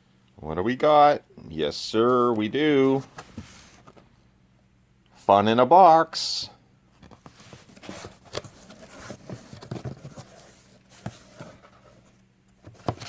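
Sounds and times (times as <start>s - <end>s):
cardboard box rustling: 7.3s - 13.0s.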